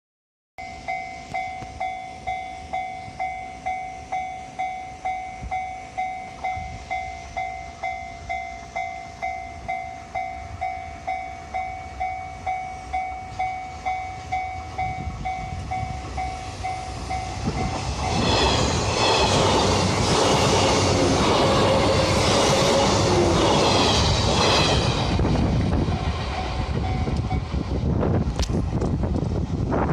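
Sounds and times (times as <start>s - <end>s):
level crossing warning bell: 0.6s - 20.0s, 26.2s - 27.5s
train passing: 0.6s - 29.9s.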